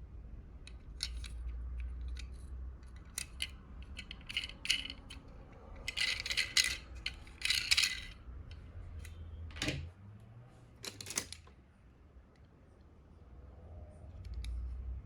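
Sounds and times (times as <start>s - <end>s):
toy cars clinking and rattling: 0.6s - 9.1s, 10.8s - 11.4s.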